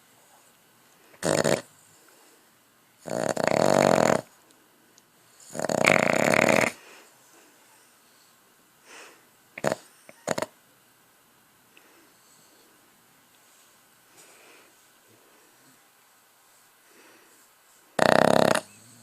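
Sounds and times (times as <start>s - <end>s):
person snoring: 1.2s - 1.7s, 3.0s - 4.3s, 5.5s - 6.8s, 18.0s - 19.0s.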